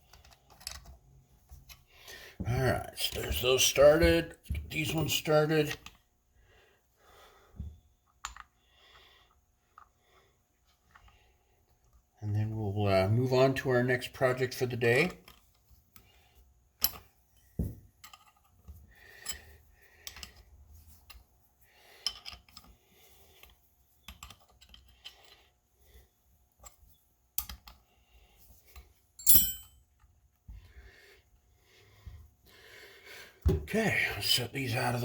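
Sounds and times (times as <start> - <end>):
metal parts clicking and tapping: 22.0 - 22.7, 28.7 - 30.1
sharp metal clatter: 29.2 - 29.7.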